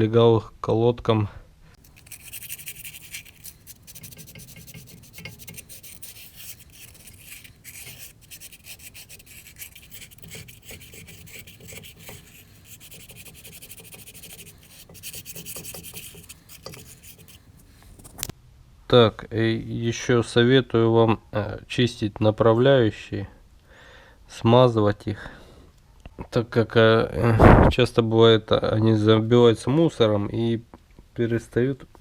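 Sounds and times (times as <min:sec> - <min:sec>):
scraping rust off metal: 0:01.8 - 0:18.3.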